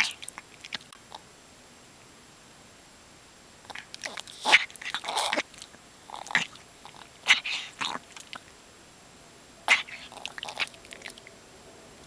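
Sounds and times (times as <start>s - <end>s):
dog breathing noisily: 6.1s - 8.0s, 9.7s - 11.2s.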